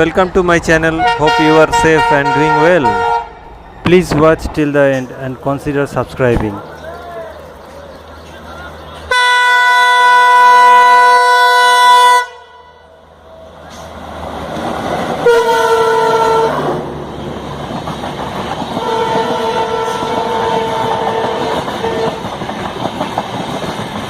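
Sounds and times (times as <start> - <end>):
train horn blasts: 1.0 - 3.4, 9.1 - 12.9, 15.2 - 16.8, 18.8 - 22.3
train rumble: 12.8 - 24.0.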